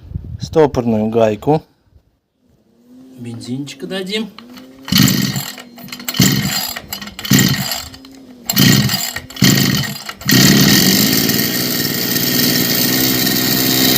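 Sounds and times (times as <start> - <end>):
recoil starter pulls: 4.2 - 13.9
brush cutter engine running: 4.3 - 13.9.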